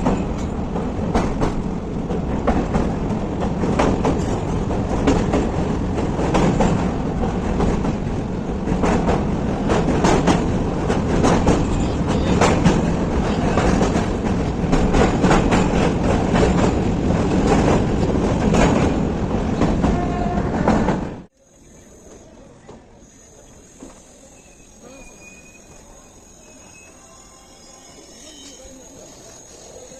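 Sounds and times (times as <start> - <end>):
wheels clacking over rail joints: 0.0 - 21.2
train rumble from aboard: 0.0 - 29.9.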